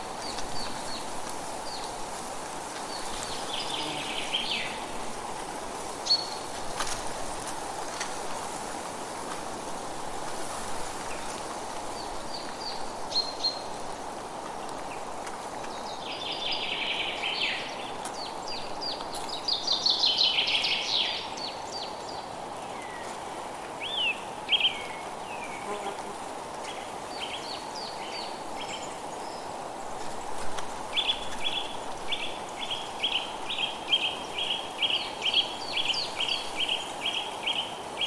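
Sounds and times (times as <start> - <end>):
steady background hiss: 0.0 - 38.0
songbirds calling: 2.9 - 5.2.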